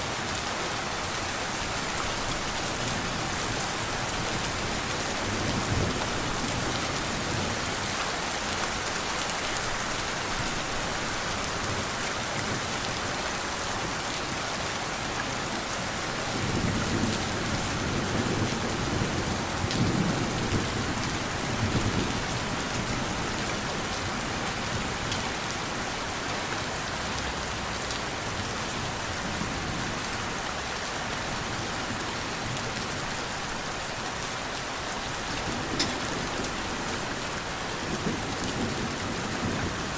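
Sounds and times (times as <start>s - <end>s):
thunder rumbling: 35.2s - 39.9s.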